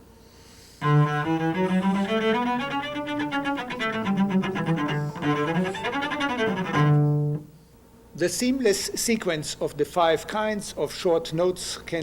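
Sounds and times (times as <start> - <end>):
cello playing a scale: 0.8 - 7.6.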